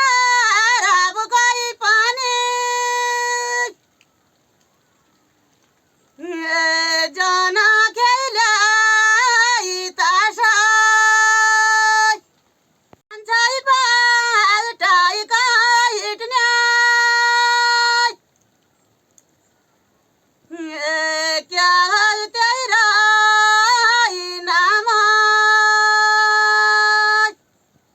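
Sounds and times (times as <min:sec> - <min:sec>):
high voice singing unaccompanied: 0:00.0 - 0:03.8, 0:06.2 - 0:12.2, 0:13.1 - 0:18.2, 0:20.5 - 0:27.4.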